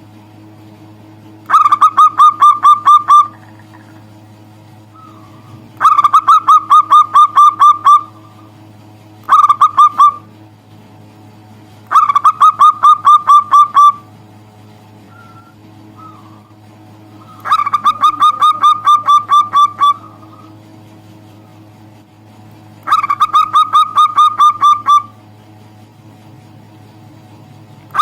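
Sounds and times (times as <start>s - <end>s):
dove calling: 1.4s - 10.4s, 11.9s - 14.2s, 15.0s - 21.8s, 22.8s - 25.4s.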